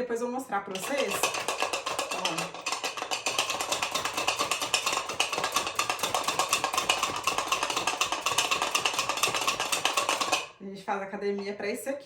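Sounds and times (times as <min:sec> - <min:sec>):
chicken rattling in shaken pot: 0:00.7 - 0:10.6.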